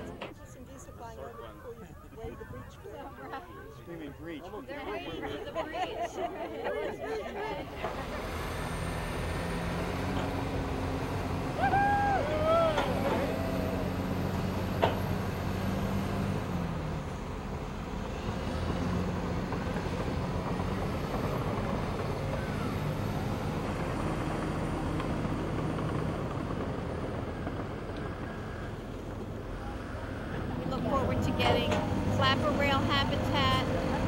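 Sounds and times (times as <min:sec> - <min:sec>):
heavy diesel engine running: 0:07.8 - 0:34.0.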